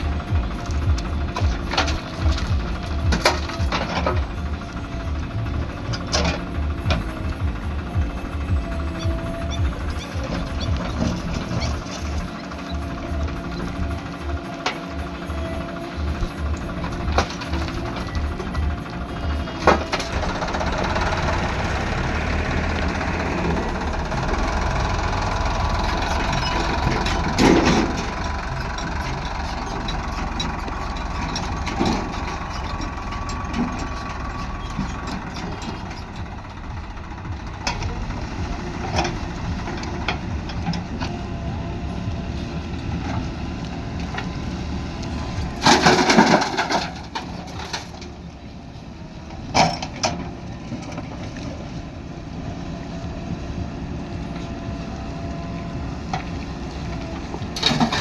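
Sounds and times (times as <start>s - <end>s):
backhoe diesel engine running: 0.0s - 58.0s.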